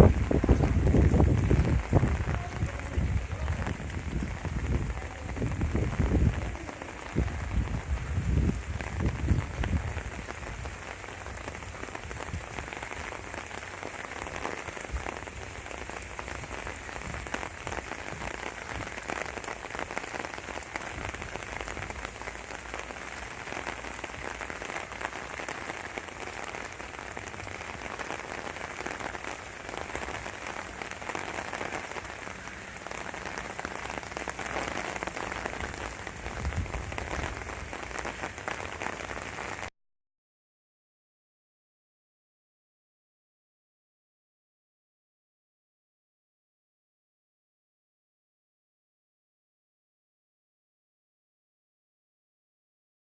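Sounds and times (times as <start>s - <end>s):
wind buffeting microphone: 0.0s - 10.8s, 16.4s - 18.9s, 35.6s - 37.7s
rain falling steadily: 0.0s - 39.7s.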